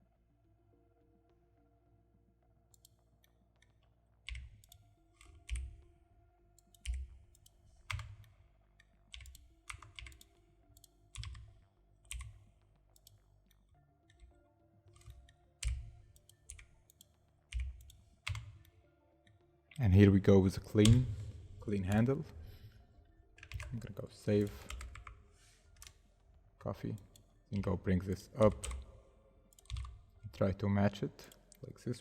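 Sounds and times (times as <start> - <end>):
keyboard and mouse clicks: 2.7 - 5.9, 6.6 - 22.7, 23.3 - 26.1, 26.8 - 30.1.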